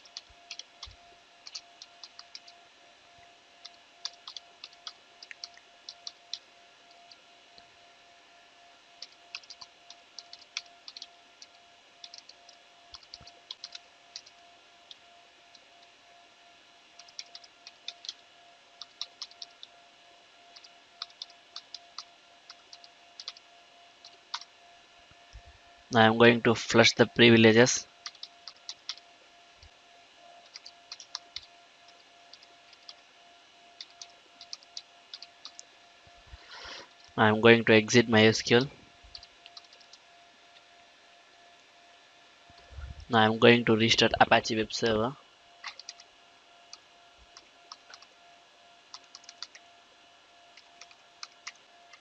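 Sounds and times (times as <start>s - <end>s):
computer keyboard typing: 0.0s - 2.6s, 3.6s - 7.2s, 9.0s - 15.7s, 17.0s - 18.2s, 18.8s - 19.7s, 20.5s - 24.5s, 28.0s - 29.1s, 30.4s - 33.0s, 33.7s - 35.6s, 39.1s - 40.0s, 45.6s - 46.1s, 46.7s - 48.1s, 48.9s - 49.6s, 50.5s - 52.0s
faint steady hum: 0.0s - 52.0s.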